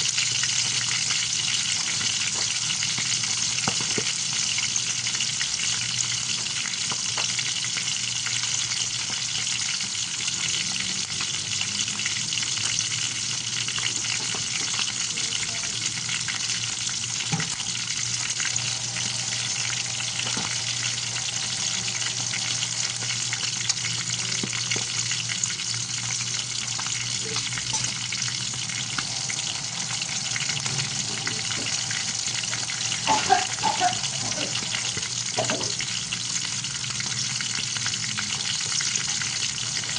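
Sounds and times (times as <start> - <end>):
fish sizzling in hot oil: 0.0 - 39.9
oil popping and crackling: 0.0 - 39.9.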